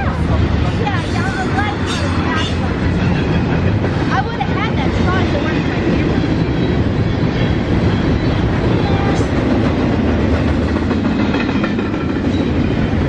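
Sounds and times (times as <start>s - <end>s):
freight train wheels rumbling: 0.0s - 13.0s.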